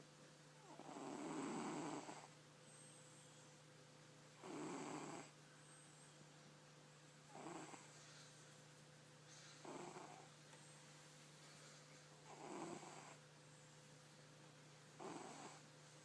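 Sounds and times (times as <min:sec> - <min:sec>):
cat snoring: 0:00.6 - 0:03.0, 0:04.4 - 0:05.8, 0:07.3 - 0:08.0, 0:09.6 - 0:10.3, 0:12.3 - 0:13.2, 0:15.0 - 0:15.7.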